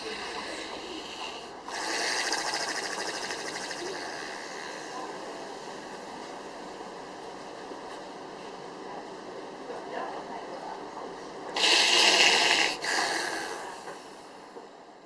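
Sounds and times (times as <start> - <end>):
noisy gasp for air: 11.6 - 14.0.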